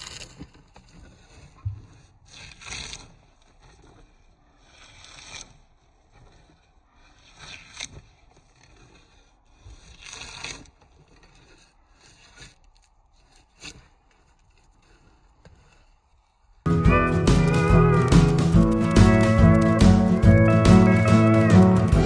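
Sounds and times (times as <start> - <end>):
scraping on wood: 16.9 - 22.0.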